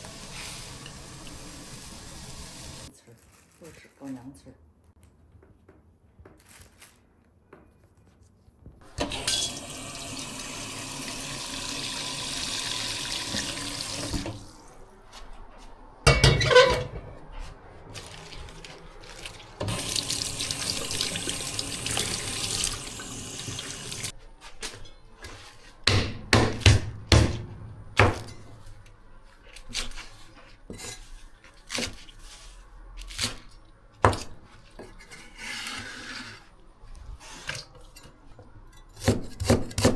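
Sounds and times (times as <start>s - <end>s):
utensils and dishes clattering: 16.1s - 17.2s.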